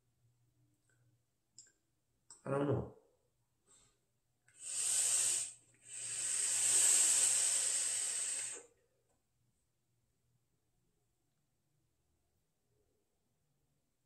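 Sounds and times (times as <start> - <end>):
person exhaling vapour: 4.5 - 8.8.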